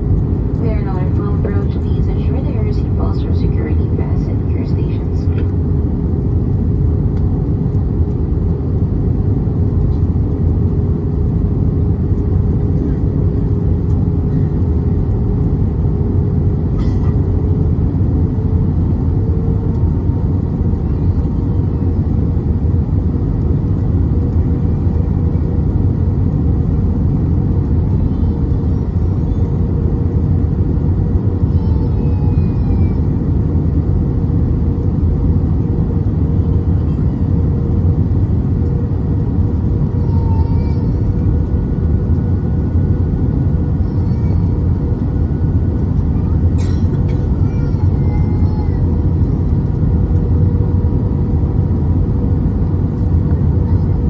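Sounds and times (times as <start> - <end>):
airplane cabin engine rumble: 0.0 - 54.0.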